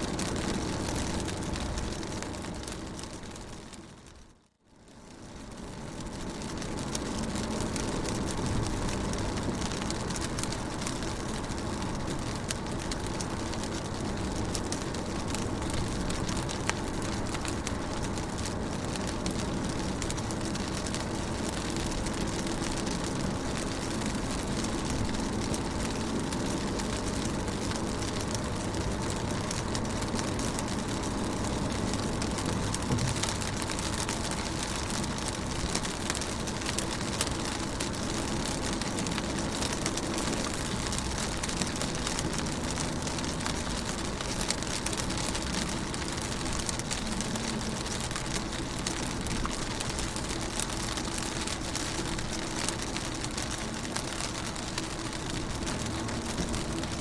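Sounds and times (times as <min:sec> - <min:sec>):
low steady rumble: 0:00.0 - 0:57.0
rain pattering on a car: 0:00.0 - 0:57.0
sharp raindrop ticks: 0:00.0 - 0:57.0.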